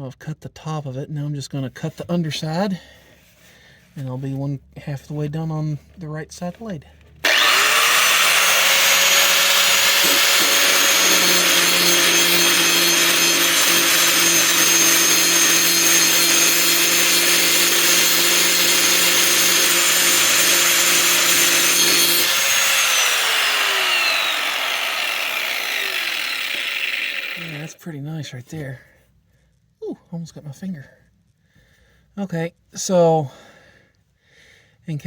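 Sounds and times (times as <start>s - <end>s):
grinder grinding steel blade: 7.2s - 27.8s.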